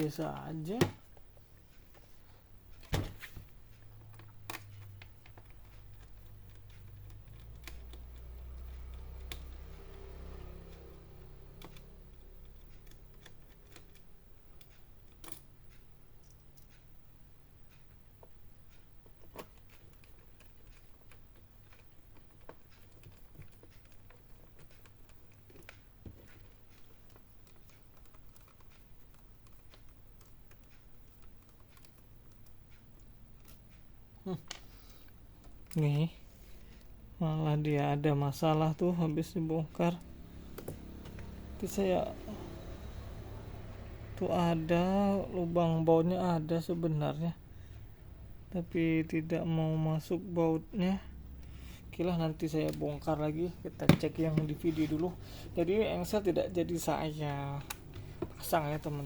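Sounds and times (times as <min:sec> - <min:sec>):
screwdriver clicking on laptop case: 0:40.1 - 0:41.5, 0:52.6 - 0:59.0.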